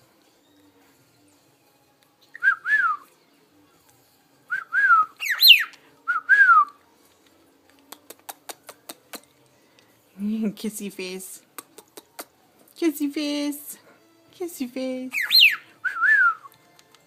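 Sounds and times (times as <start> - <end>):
cockatiel whistling: 4.5 - 6.6, 15.2 - 16.4.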